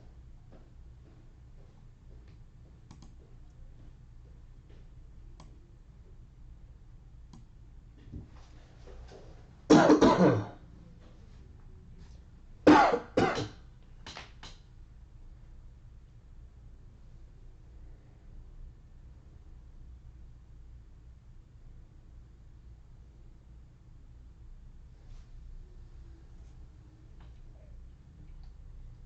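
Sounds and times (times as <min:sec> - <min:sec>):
person clearing throat: 0:09.7 - 0:10.6, 0:12.7 - 0:13.6
person coughing: 0:09.7 - 0:10.6, 0:12.7 - 0:13.6.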